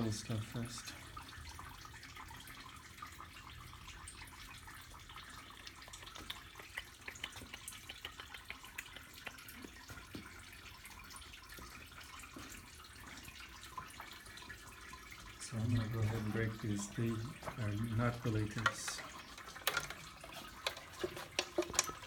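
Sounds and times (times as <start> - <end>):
hand tools clicking and tapping: 18.3 - 22.0.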